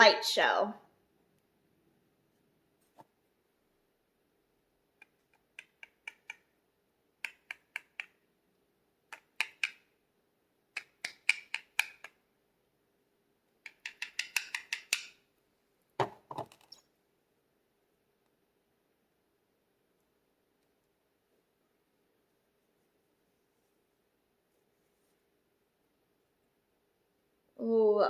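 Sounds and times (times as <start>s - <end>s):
fingernails tapping on palette: 13.6s - 15.1s.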